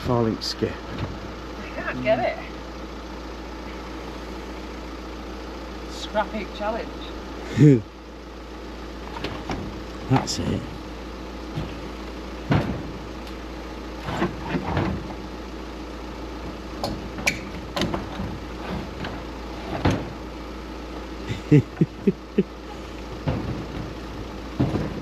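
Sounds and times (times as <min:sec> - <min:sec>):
vehicle engine idling: 0:00.0 - 0:25.0
knocks and clatters of handling: 0:23.0 - 0:25.0
low thumps: 0:23.0 - 0:25.0.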